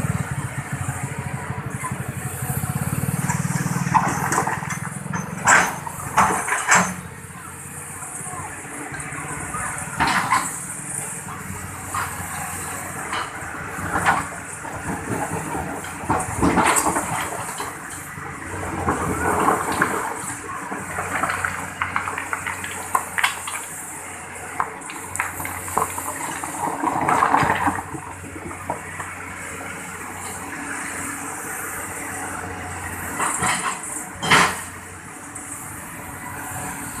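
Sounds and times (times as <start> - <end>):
excavator engine running: 0.0 - 37.0.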